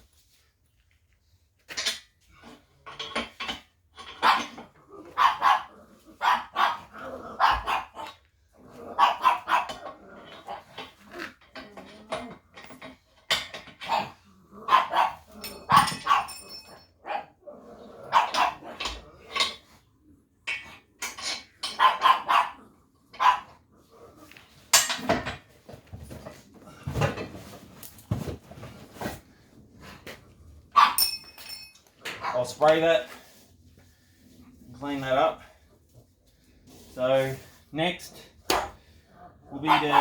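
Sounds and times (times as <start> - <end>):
dog barking: 4.2 - 4.5, 5.2 - 8.1, 9.0 - 9.8, 13.9 - 15.2, 15.8 - 16.3, 18.1 - 18.6, 21.8 - 22.6, 23.2 - 23.5, 30.8 - 31.0, 39.6 - 40.0.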